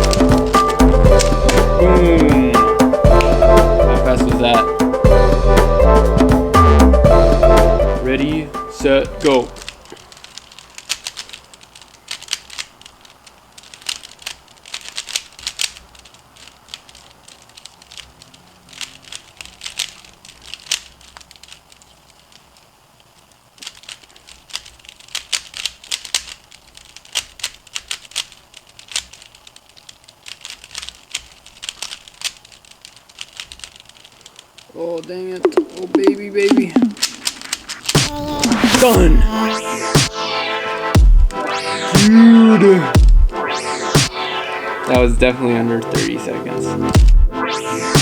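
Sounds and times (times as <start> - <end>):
plastic puzzle cube clicking: 9.6 - 34.7.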